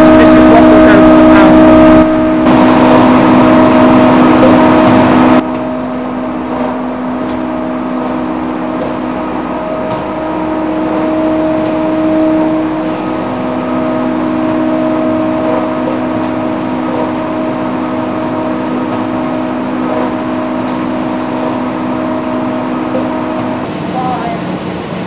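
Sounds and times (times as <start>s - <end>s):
machinery humming: 0.0s - 25.0s.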